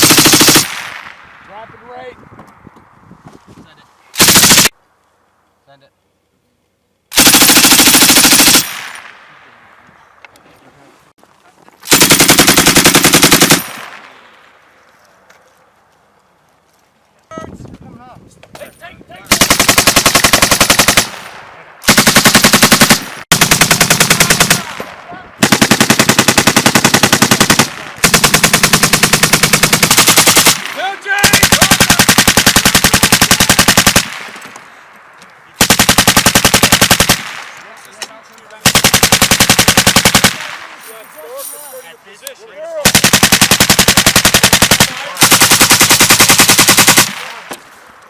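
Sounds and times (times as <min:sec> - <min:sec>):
machine gun automatic fire: 0:00.0 - 0:01.0, 0:04.2 - 0:04.7, 0:07.1 - 0:09.1, 0:11.8 - 0:14.0, 0:19.3 - 0:34.4, 0:35.6 - 0:37.4, 0:38.6 - 0:40.6, 0:42.8 - 0:47.4.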